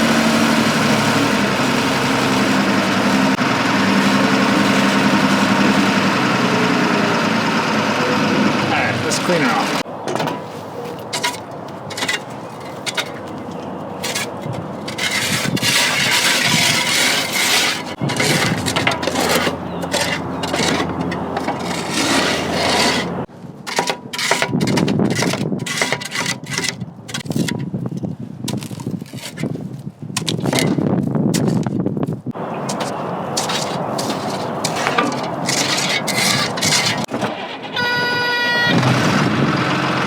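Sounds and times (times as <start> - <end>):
steel blade scraping ground: 8.7 - 9.8, 10.4 - 27.6, 32.6 - 37.2.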